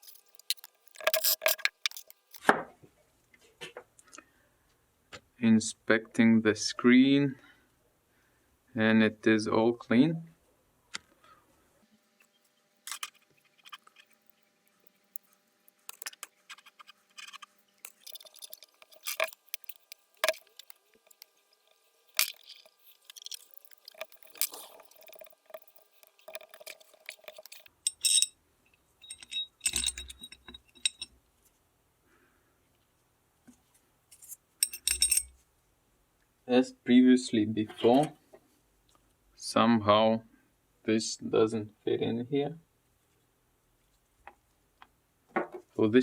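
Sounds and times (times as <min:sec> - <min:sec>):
metal tools and parts clinking: 0:00.0 - 0:02.5, 0:12.8 - 0:31.1, 0:34.1 - 0:35.4.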